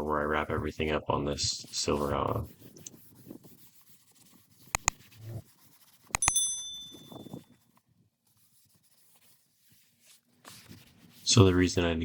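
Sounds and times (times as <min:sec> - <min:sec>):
quick double clicks: 0:04.8 - 0:05.0
high metallic ring: 0:06.2 - 0:07.5.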